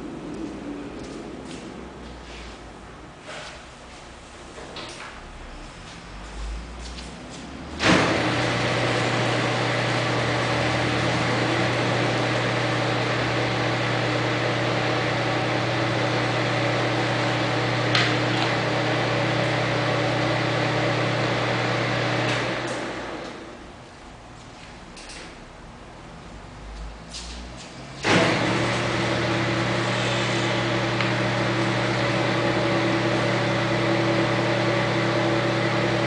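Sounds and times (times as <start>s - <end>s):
metal lathe running: 7.8s - 23.3s, 28.0s - 36.0s.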